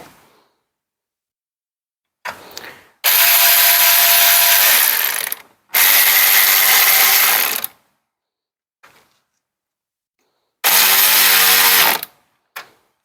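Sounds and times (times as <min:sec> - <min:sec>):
cordless ratchet running: 0:03.1 - 0:07.7, 0:10.7 - 0:12.1.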